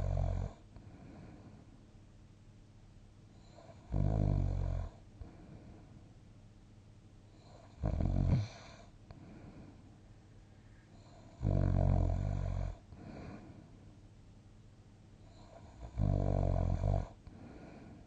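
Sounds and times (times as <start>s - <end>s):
sleep breathing: 0.8s - 1.7s, 7.4s - 9.9s, 12.2s - 13.8s, 15.3s - 18.0s
person snoring: 7.5s - 8.9s, 11.2s - 13.5s, 15.3s - 18.0s.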